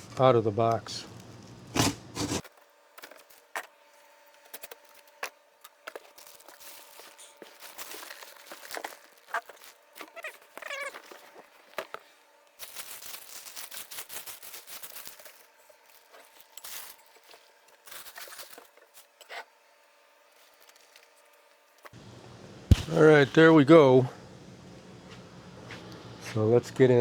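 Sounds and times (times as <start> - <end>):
cardboard tearing: 1.2 - 3.4, 5.9 - 12.0
knife cutting cardboard box: 1.7 - 2.5.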